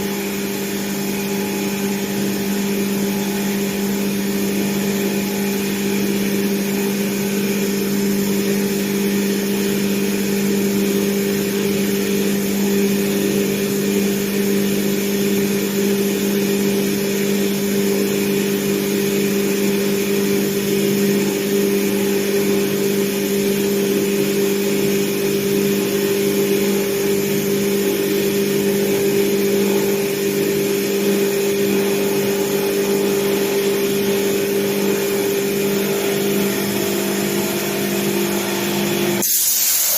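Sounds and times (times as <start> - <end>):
plasma cutter hissing: 39.1 - 39.9.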